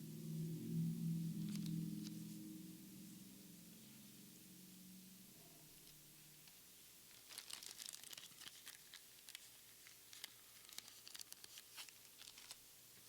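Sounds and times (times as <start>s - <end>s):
foil wrapper tearing and crinkling: 7.1s - 12.6s.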